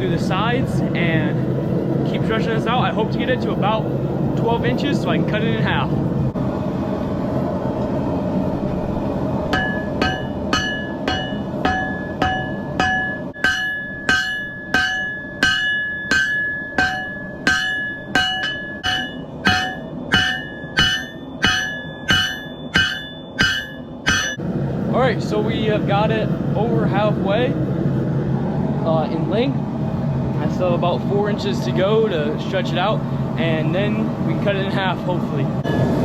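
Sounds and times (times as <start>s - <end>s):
steady rushing noise: 0.0s - 36.0s
hammer striking metal on anvil: 9.4s - 24.4s.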